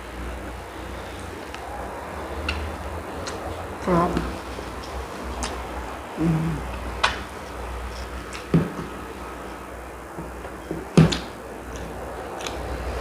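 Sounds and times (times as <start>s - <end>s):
steady low hum: 0.0s - 13.0s
mouth smacking while chewing: 4.8s - 5.6s.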